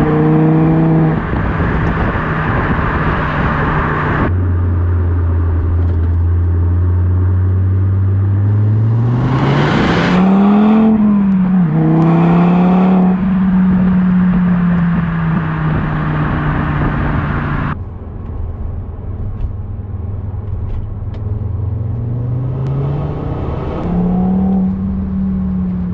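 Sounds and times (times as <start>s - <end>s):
car engine revving hard: 0.0s - 4.3s, 8.4s - 17.8s, 21.8s - 25.9s.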